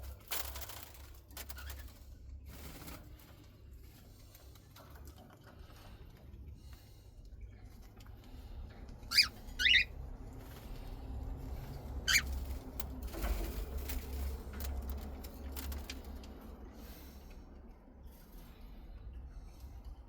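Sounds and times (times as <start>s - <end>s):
cockatiel chirps: 9.1s - 9.9s, 12.1s - 12.3s
rustling and light scratching: 10.3s - 16.4s.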